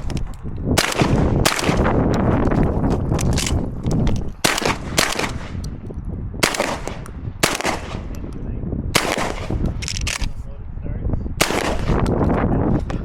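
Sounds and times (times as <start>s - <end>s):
steady low rumble: 0.0s - 13.0s
shotgun shots: 0.7s - 2.0s, 4.4s - 5.6s, 6.4s - 8.2s, 8.9s - 10.2s, 11.4s - 12.1s.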